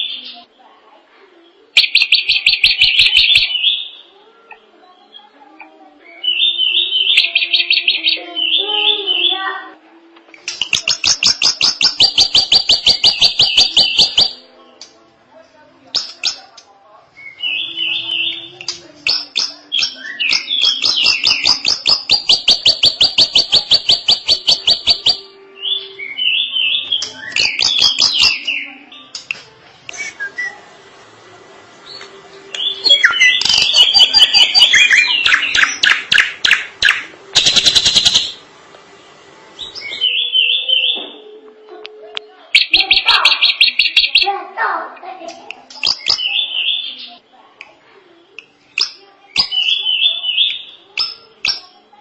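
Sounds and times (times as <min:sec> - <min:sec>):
bird singing whistled phrases: 0:10.5 - 0:14.4, 0:17.2 - 0:29.1, 0:29.9 - 0:30.6, 0:32.6 - 0:38.4, 0:39.6 - 0:41.7, 0:42.5 - 0:44.3, 0:45.8 - 0:47.2, 0:48.2 - 0:51.7.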